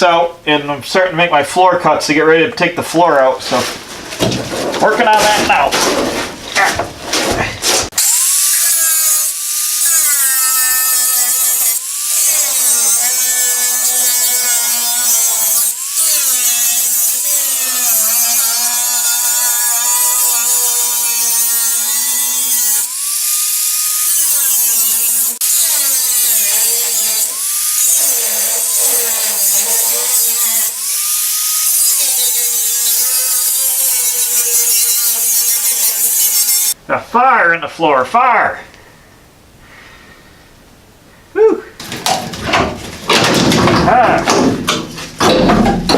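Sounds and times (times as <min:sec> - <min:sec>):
cut-off wheel cutting sheet metal: 0:07.8 - 0:36.8.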